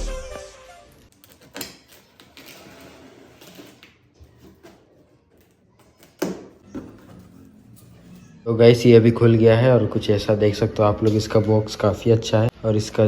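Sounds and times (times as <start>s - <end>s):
music: 0.0s - 1.1s.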